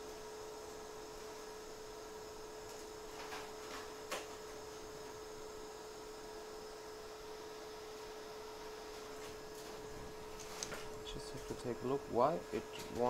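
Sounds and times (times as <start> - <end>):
faint electrical hum: 0.0 - 13.0.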